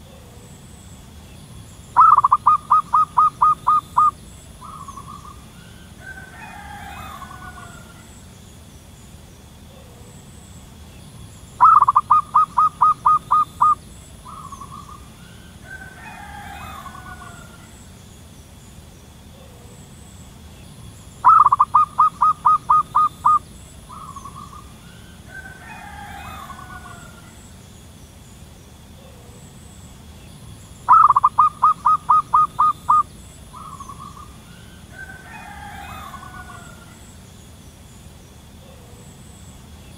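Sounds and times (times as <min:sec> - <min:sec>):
dove calling clipped notes: 0:01.8 - 0:06.3, 0:11.4 - 0:16.0, 0:21.1 - 0:25.6, 0:30.7 - 0:37.0
rough multi-tone dove call: 0:01.9 - 0:08.3, 0:11.5 - 0:18.0, 0:21.2 - 0:27.6, 0:30.8 - 0:37.3.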